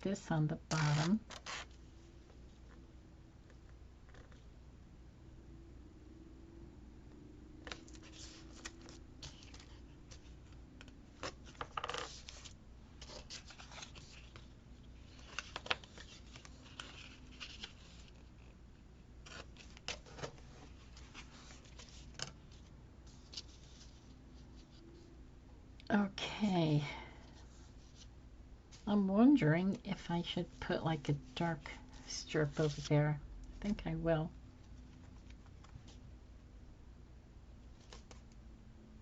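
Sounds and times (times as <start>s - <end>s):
paper rustling: 7.6s - 18.5s, 19.2s - 24.8s, 31.9s - 32.9s.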